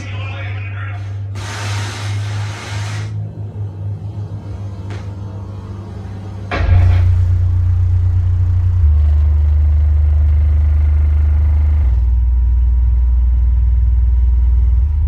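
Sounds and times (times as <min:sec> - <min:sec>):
subwoofer deep bass notes: 0:03.2 - 0:15.0.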